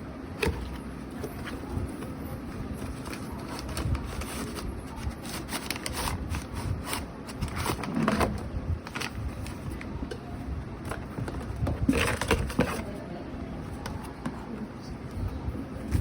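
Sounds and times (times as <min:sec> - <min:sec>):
lamp packaging handled: 0:00.4 - 0:09.8.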